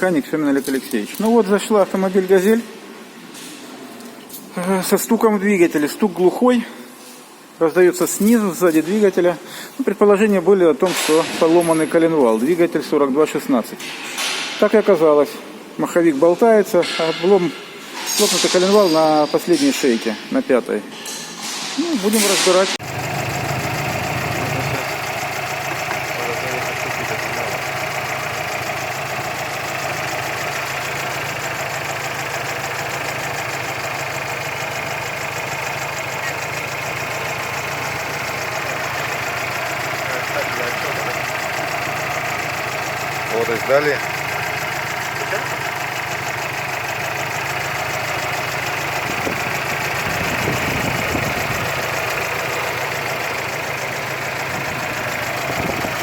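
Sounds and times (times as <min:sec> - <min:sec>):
petrol engine idling: 0:21.4 - 0:56.0
dull engine knock: 0:22.8 - 0:56.0.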